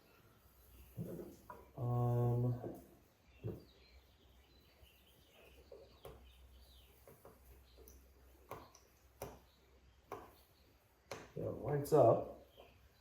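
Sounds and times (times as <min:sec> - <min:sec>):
faint bird chirps: 0:00.0 - 0:13.0.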